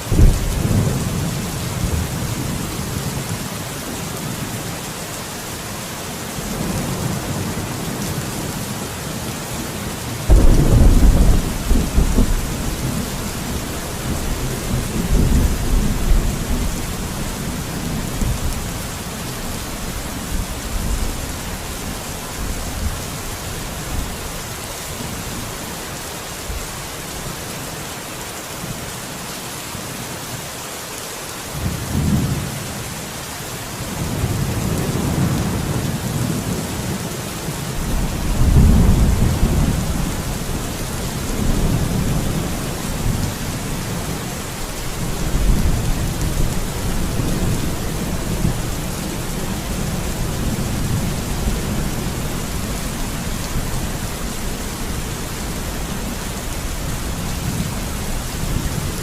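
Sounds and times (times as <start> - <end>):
steady rain: 0.0 - 59.0
thunder rumbling: 0.1 - 2.7, 10.3 - 24.2, 37.7 - 59.0.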